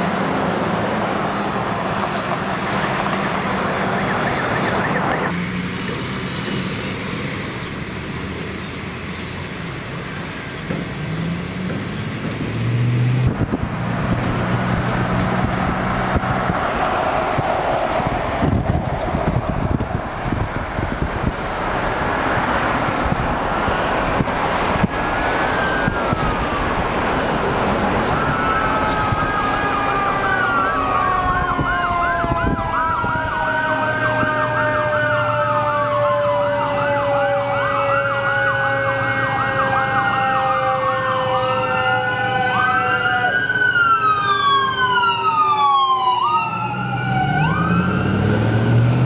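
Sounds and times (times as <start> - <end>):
emergency vehicle sirens: 0.0 - 49.0
traffic noise: 0.0 - 49.0.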